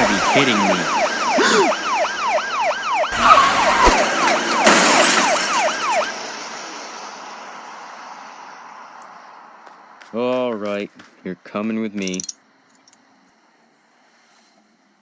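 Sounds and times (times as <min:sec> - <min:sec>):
police siren yelping: 0:00.0 - 0:06.2.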